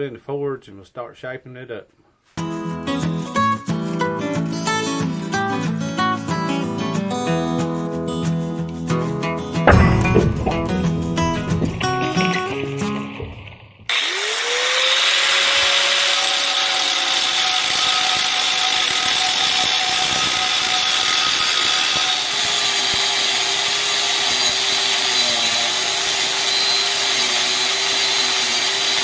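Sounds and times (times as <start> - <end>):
power tool grinding through steel: 13.9 - 29.0.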